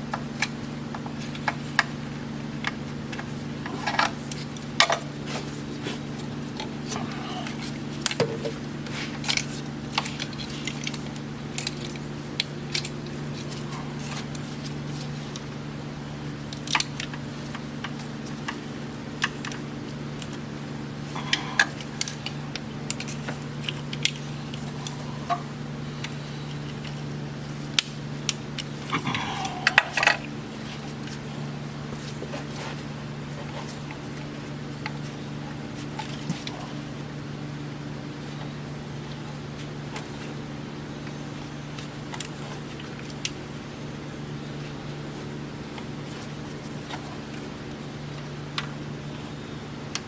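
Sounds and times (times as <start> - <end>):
steady low hum: 0.0 - 50.0.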